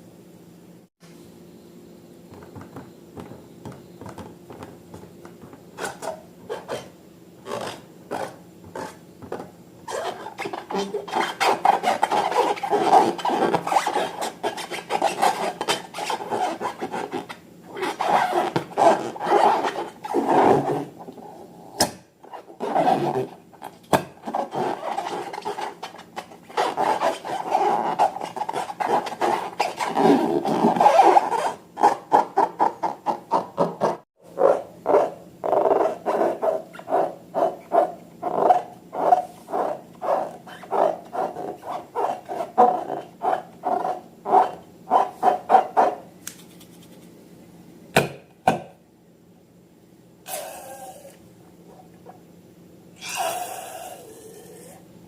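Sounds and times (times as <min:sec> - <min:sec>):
rubbery rubbing and squishing: 0:04.2 - 0:21.1, 0:22.2 - 0:47.1.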